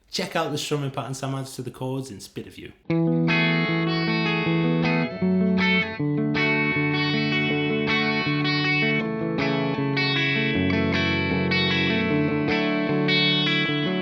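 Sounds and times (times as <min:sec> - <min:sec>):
guitar strumming chords: 0:02.8 - 0:14.0.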